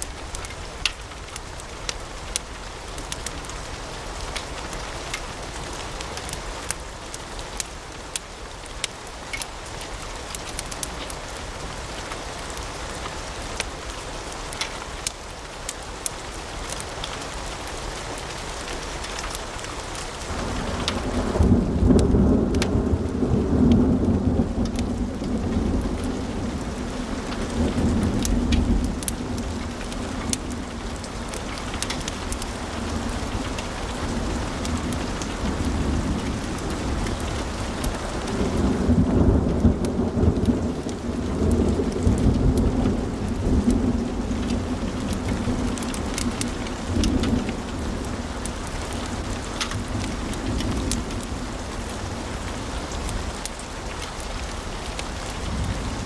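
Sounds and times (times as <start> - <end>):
low rumble of burning logs: 0.0 - 56.0
wood fire crackling and popping: 0.0 - 56.0.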